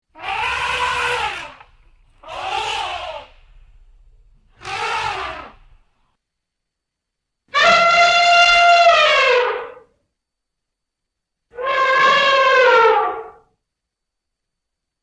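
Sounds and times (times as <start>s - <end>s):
elephant calls: 0.2s - 3.5s, 4.5s - 5.6s, 7.5s - 9.9s, 11.5s - 13.4s.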